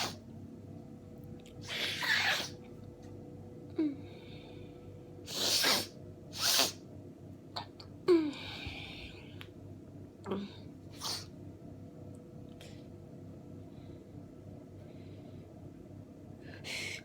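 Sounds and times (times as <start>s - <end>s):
person sneezing: 0.0s - 0.2s, 1.6s - 2.6s, 5.3s - 6.8s, 11.0s - 11.3s.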